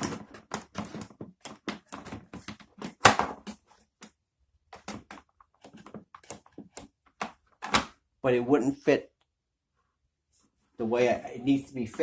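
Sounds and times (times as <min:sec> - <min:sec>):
plastic clatter: 0:00.0 - 0:08.0
plastic clicks and knocks: 0:00.0 - 0:08.0.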